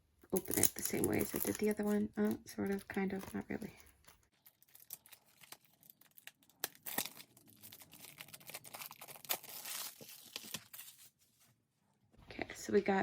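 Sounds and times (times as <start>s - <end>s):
plastic wrap tearing and crinkling: 2.6s - 11.2s.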